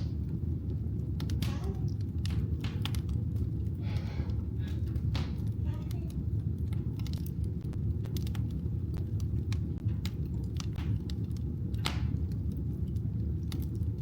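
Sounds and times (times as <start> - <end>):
wood fire crackling and popping: 0.0 - 14.0.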